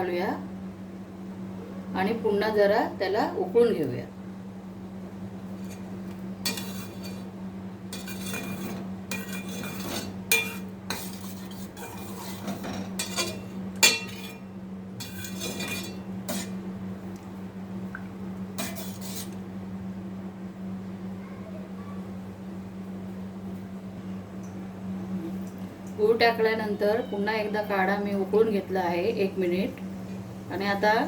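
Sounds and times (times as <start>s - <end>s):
steady low hum: 0.0s - 31.0s
metal spoon scraping a pot: 5.6s - 7.3s, 7.9s - 14.4s, 15.0s - 16.6s, 18.6s - 19.4s.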